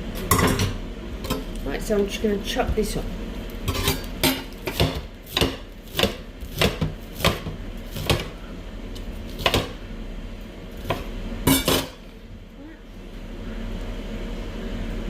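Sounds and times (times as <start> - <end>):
knife chopping on board: 4.2 - 8.4, 9.4 - 9.8.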